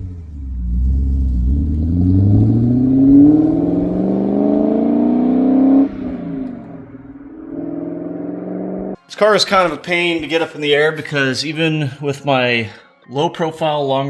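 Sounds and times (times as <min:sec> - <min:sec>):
car engine revving: 0:00.0 - 0:09.0.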